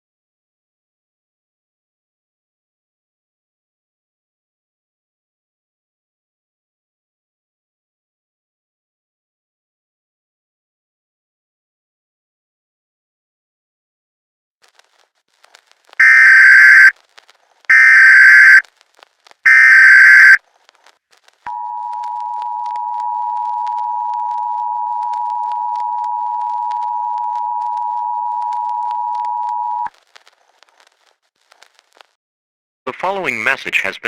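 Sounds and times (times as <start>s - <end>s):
digital header bursts: 16.0s - 16.9s, 17.7s - 18.6s, 19.5s - 20.4s
two-tone attention signal: 16.0s - 16.9s, 17.7s - 18.6s, 19.5s - 20.4s.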